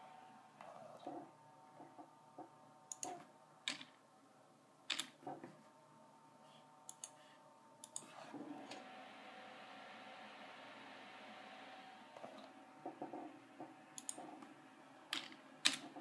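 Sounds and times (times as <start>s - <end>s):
computer fans humming: 0.0s - 16.0s
sharp clicks: 2.9s - 3.1s, 7.8s - 8.1s
graphics card fan hiss: 6.9s - 16.0s.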